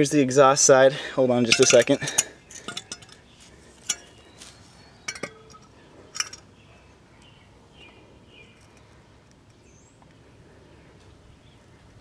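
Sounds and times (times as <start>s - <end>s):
metallic clinks: 1.5s - 4.3s, 5.0s - 6.5s.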